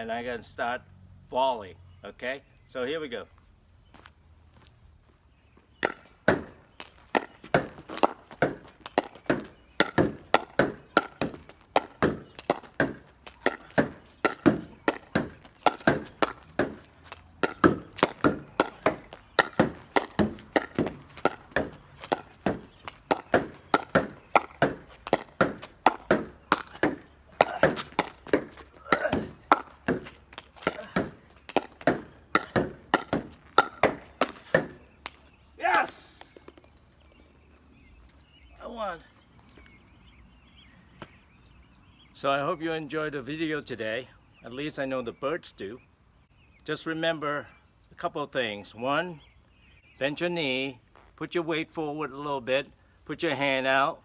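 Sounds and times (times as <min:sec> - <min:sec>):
ball bouncing on ground: 0:05.7 - 0:36.8
ball knocking off garage door: 0:05.8 - 0:16.8, 0:17.4 - 0:34.8
paddle striking plastic ball: 0:05.8 - 0:35.2.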